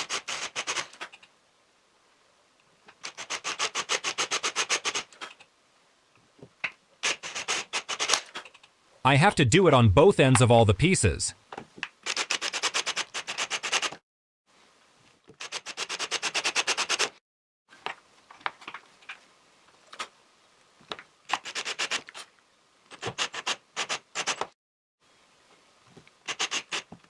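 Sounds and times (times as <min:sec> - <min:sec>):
hand drill rasping into wood: 0:23.0 - 0:24.5, 0:26.3 - 0:26.9.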